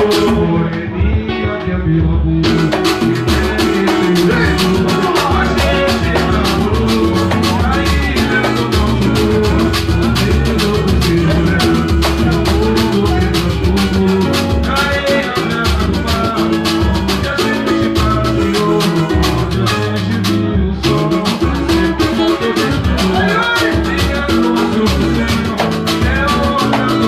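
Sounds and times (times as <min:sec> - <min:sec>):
band music with fast percussion: 0:00.0 - 0:27.0.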